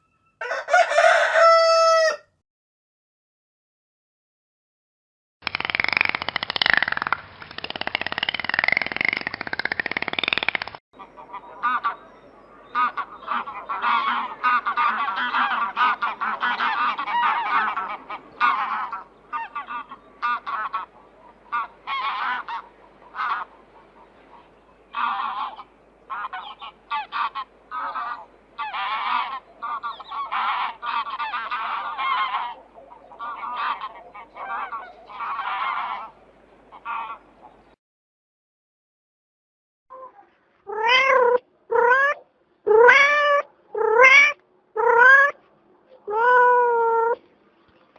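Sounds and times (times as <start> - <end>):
geese honking: 0.4 - 2.2, 11.0 - 37.6, 42.9 - 45.4.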